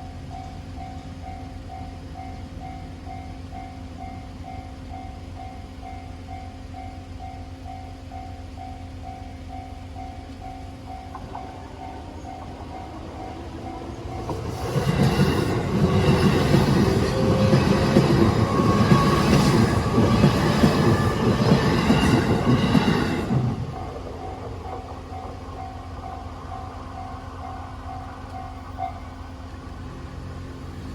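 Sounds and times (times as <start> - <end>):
level-crossing warning bell: 0.0 - 29.9
electric train passing: 0.0 - 30.9
wheels clattering on rails: 7.6 - 30.9
wheel squeal: 13.2 - 24.9.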